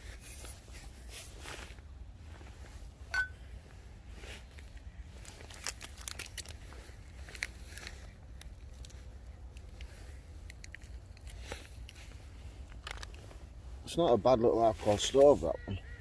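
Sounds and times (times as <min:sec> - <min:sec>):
camp gear clicks and rustles: 0:00.0 - 0:13.9, 0:14.6 - 0:15.4
low outdoor rumble: 0:00.0 - 0:16.0
ringing clink: 0:03.1 - 0:03.4.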